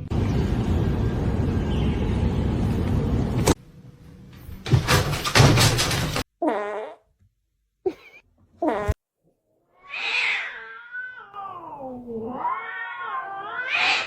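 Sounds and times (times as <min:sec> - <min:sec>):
low buzzing rumble: 0:00.0 - 0:04.0
cat meowing: 0:09.8 - 0:14.0.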